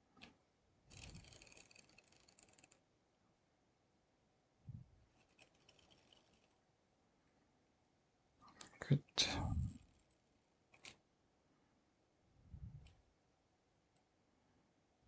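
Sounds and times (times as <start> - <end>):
scratchy rustle: 0.9 - 2.8, 5.1 - 6.6.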